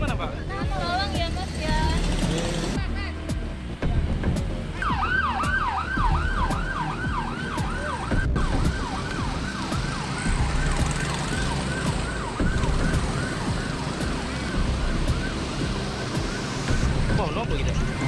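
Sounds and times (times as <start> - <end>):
road traffic rumble: 0.0 - 18.0
siren yelping: 4.8 - 17.3.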